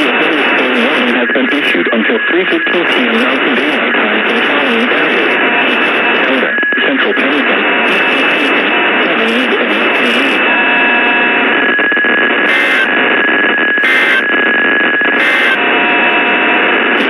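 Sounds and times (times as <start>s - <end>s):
radio static hiss: 0.0s - 17.0s
short bursts of data tones: 9.3s - 17.0s.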